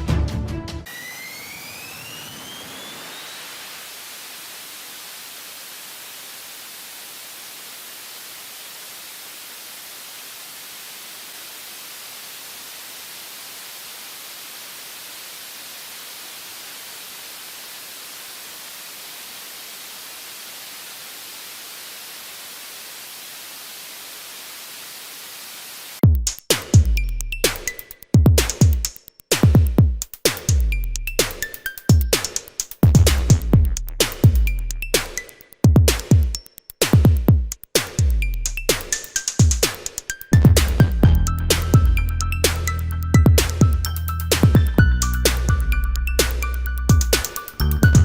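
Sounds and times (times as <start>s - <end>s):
white noise hiss: 0.9s - 26.0s.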